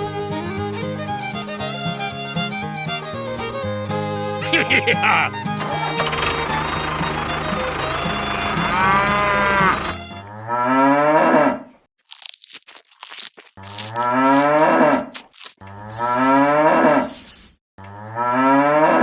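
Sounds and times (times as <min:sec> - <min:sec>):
cow mooing: 0:05.6 - 0:10.0
short crunching clicks: 0:05.6 - 0:10.0.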